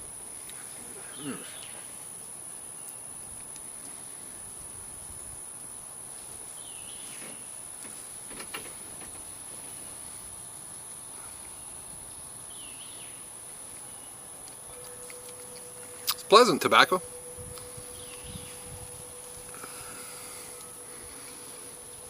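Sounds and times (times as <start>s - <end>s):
high-pitched insect trilling: 14.6s - 22.0s.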